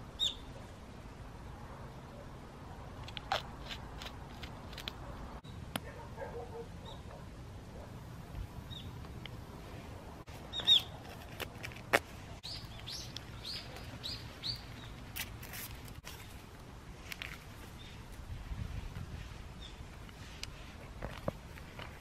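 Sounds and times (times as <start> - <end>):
bird chirping: 0.1 - 0.6, 8.6 - 9.0, 10.4 - 11.0, 12.4 - 15.0.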